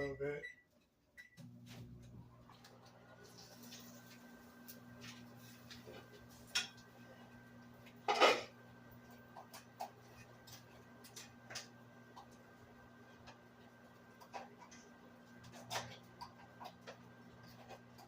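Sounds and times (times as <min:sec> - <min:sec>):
kitchenware clinking: 0:08.0 - 0:08.5.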